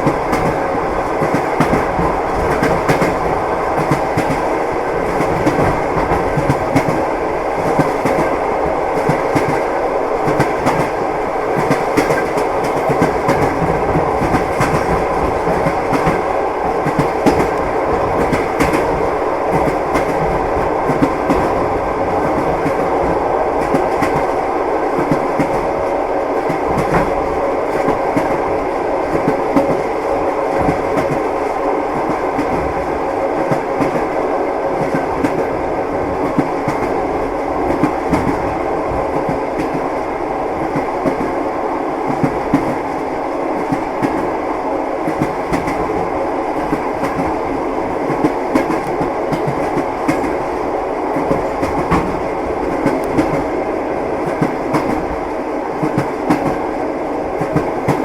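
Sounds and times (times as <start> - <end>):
train wheels clacking: 0.0 - 25.8, 51.1 - 53.6, 57.4 - 58.0
railway carriage rumble: 0.0 - 58.0.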